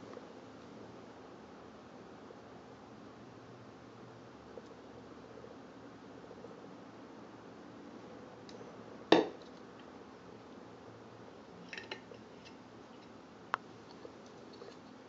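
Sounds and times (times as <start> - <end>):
hard objects knocking: 9.1 - 9.4.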